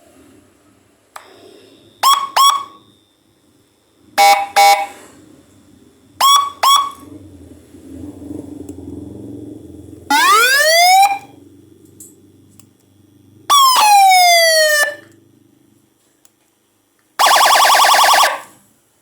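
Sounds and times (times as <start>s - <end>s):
low hum: 0.0s - 18.8s
electronic siren blasts: 2.0s - 3.0s, 4.1s - 5.2s, 6.2s - 7.3s, 9.9s - 11.7s, 13.4s - 15.2s, 17.2s - 18.6s.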